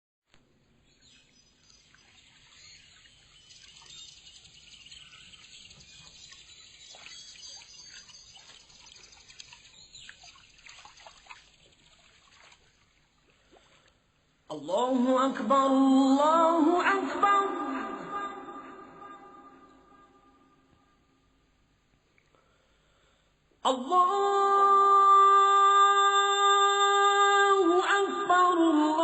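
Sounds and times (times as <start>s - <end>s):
small birds chirping: 0.7s - 12.7s.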